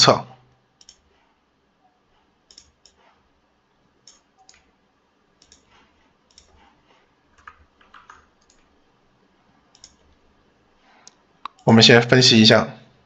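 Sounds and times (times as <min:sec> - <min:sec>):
mouse and keyboard clicking: 0:00.8 - 0:01.1, 0:02.5 - 0:03.1, 0:04.0 - 0:04.7, 0:05.4 - 0:06.7, 0:07.4 - 0:08.7, 0:09.7 - 0:10.2.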